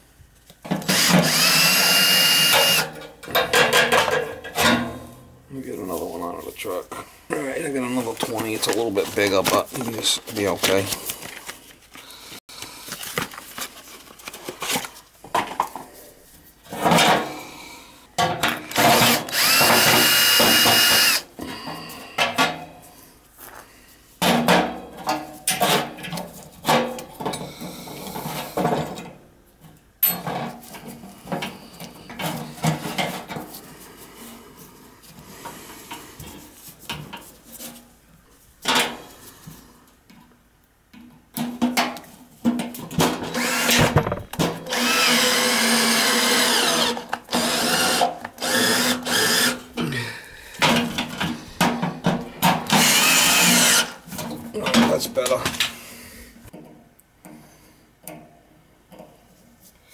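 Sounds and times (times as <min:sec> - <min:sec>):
cordless drill whining: 0:00.9 - 0:02.9, 0:18.7 - 0:21.3, 0:43.3 - 0:49.6, 0:52.7 - 0:54.0
tools and metal parts clattering: 0:02.9 - 0:05.0, 0:30.0 - 0:33.5.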